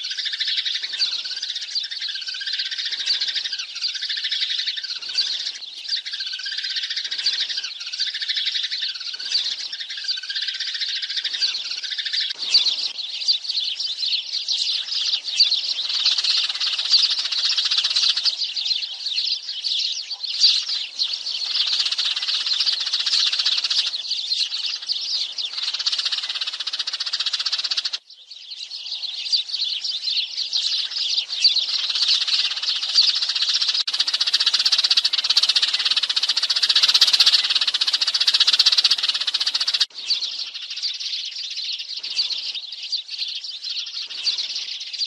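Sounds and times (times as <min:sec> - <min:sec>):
sparrows chattering: 0:00.0 - 0:45.0.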